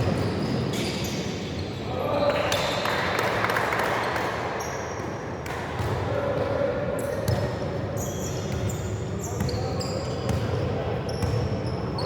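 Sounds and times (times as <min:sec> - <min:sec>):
shoe squeaks: 0:00.0 - 0:01.9, 0:08.0 - 0:12.0
background noise: 0:00.0 - 0:12.0.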